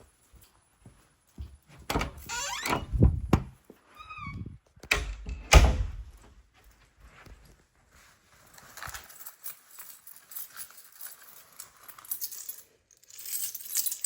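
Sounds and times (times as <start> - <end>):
knocks and thuds: 1.9 - 3.6.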